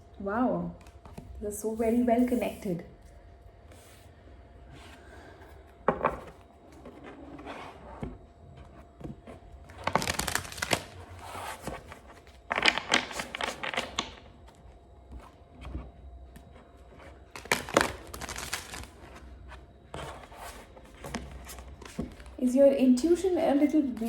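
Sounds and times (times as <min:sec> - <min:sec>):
cards being shuffled: 0:09.0 - 0:14.3, 0:17.3 - 0:19.2.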